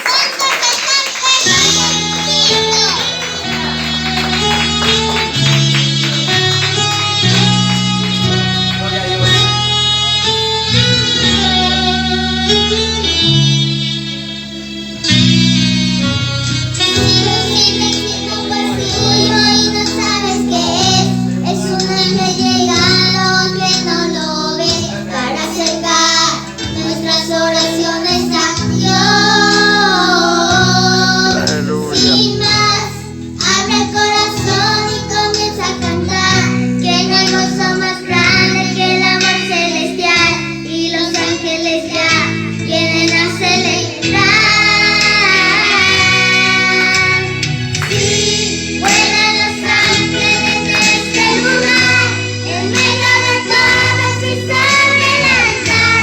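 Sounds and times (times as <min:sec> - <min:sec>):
girl singing religious song: 0:00.0 - 0:04.8, 0:16.8 - 0:56.0
instrumental backing music: 0:00.4 - 0:56.0.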